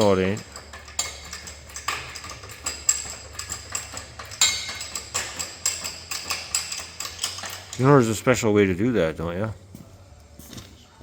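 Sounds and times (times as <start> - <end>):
sharp metal knocks: 0.0 - 7.9
metal parts and tools clinking: 0.0 - 8.4.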